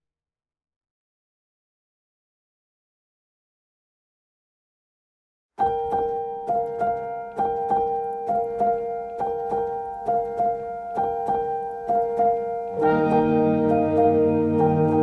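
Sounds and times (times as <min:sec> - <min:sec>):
piano figure: 0:05.6 - 0:15.0
sustained chords and bass: 0:12.8 - 0:15.0.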